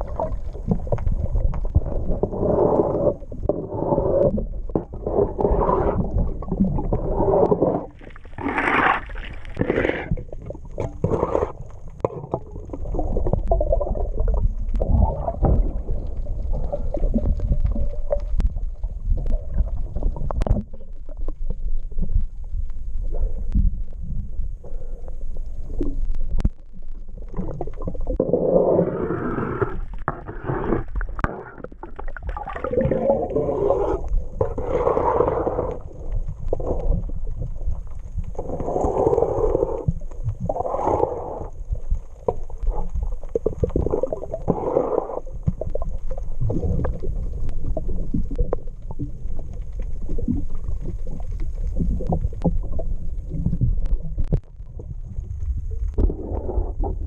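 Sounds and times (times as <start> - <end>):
steady low rumble: 12.6 - 28.0, 45.3 - 57.0.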